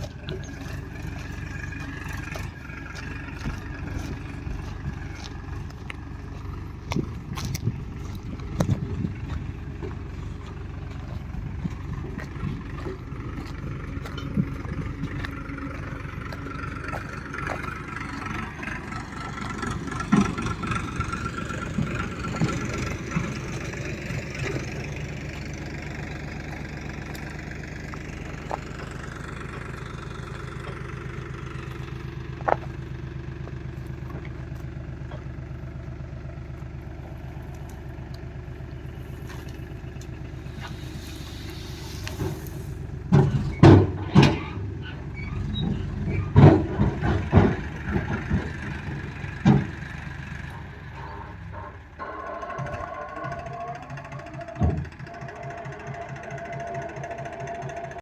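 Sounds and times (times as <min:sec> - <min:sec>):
diesel engine running: 0:00.0 - 0:58.0
machine knocks and clatter: 0:43.0 - 0:50.3.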